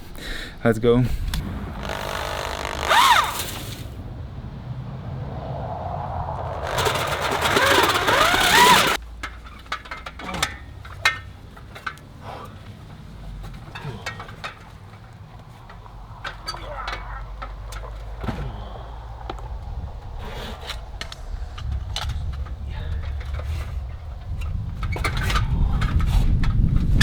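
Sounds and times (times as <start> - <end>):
motor grinding: 1.2 - 9.0.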